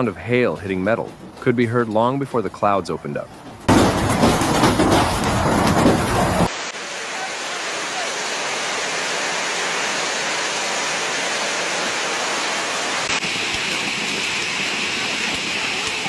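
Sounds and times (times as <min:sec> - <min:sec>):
hail and rain pelting: 0:03.6 - 0:16.0.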